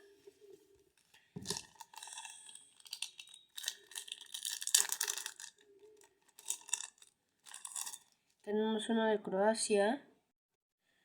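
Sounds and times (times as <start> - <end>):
card packet wrapper tearing: 1.4 - 5.6.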